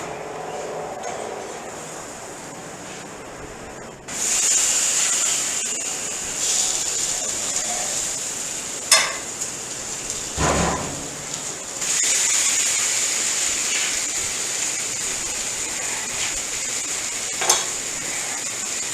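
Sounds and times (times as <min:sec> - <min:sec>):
chicken sizzling on a grill: 0:04.1 - 0:18.9.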